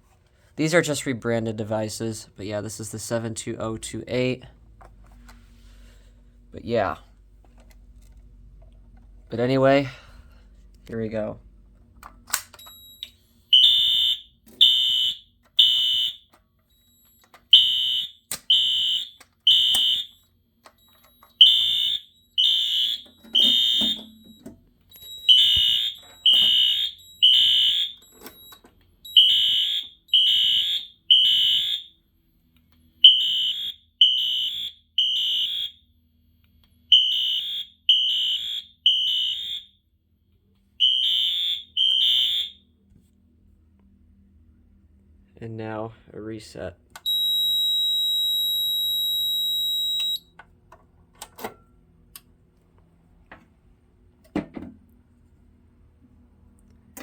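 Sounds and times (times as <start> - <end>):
fire alarm horn blasts: 12.9 - 20.3, 20.9 - 28.0, 29.0 - 32.0, 33.0 - 35.9, 36.8 - 39.9, 40.8 - 42.7, 47.0 - 50.3.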